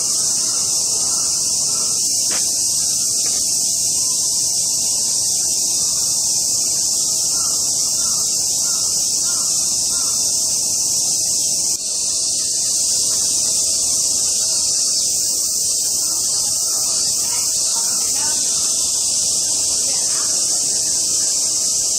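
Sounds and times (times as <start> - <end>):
cicadas chorus: 0.0 - 21.9.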